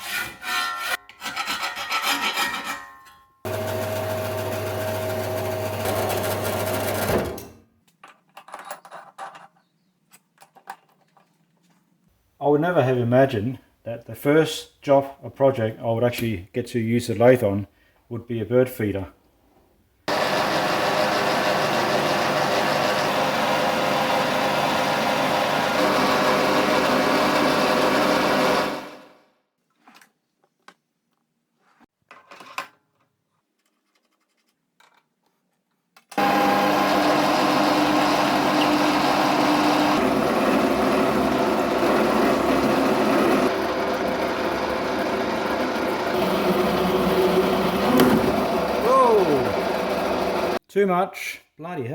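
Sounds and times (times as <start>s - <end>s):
lathe running: 3.5s - 7.2s, 20.1s - 29.1s, 36.2s - 50.6s.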